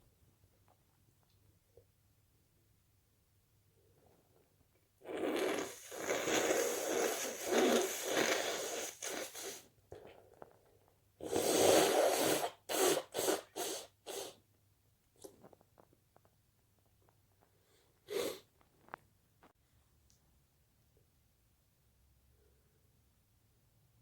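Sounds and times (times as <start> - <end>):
person sneezing: 11.3 - 14.4, 18.1 - 18.5.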